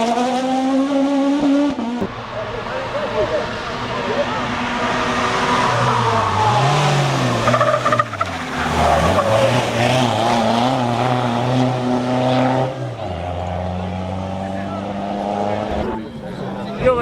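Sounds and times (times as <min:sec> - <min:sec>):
rally car engine revving: 0:00.0 - 0:17.0
sharp exhaust pops: 0:15.2 - 0:17.0.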